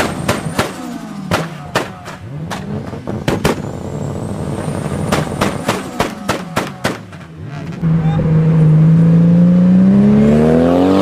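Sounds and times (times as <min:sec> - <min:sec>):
exhaust bangs and pops: 0:00.0 - 0:03.8, 0:04.6 - 0:07.8
car engine revving: 0:00.0 - 0:11.0.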